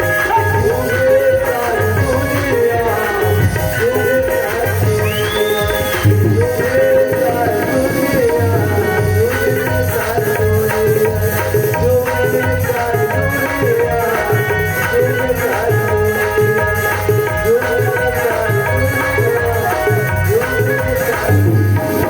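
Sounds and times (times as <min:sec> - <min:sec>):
hand drums: 0:00.0 - 0:22.0
wavering melody line: 0:02.7 - 0:09.8.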